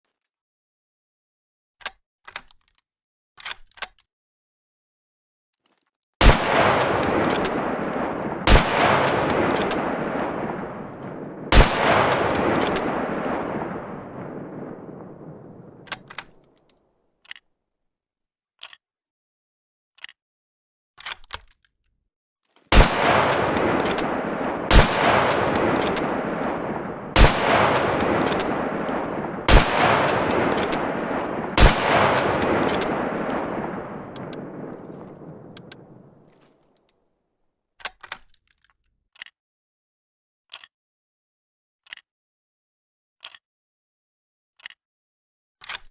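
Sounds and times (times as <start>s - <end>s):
rifle shots with rolling echo: 6.2s - 16.4s, 22.7s - 36.3s
faint rifle clicks: 6.2s - 17.4s, 22.7s - 36.5s.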